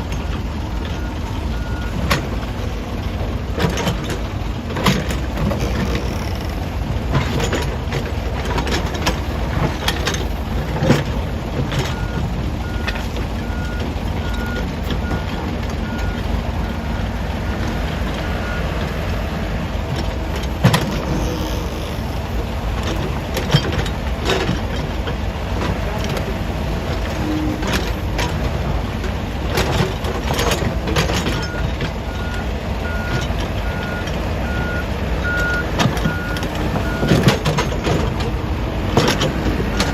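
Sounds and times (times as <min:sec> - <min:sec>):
heavy diesel machinery running: 0:00.0 - 0:39.9
reversing alarm beeping: 0:00.9 - 0:02.0, 0:11.8 - 0:17.1, 0:18.2 - 0:18.7, 0:31.4 - 0:37.2
knocks and clanks: 0:03.5 - 0:17.0, 0:19.7 - 0:34.6, 0:35.2 - 0:39.9.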